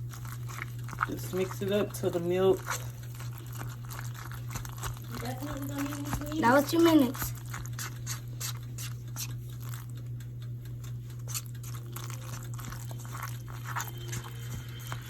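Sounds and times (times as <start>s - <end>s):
spoon stirring food in bowl: 0.0s - 15.0s
steady low hum: 0.0s - 15.0s.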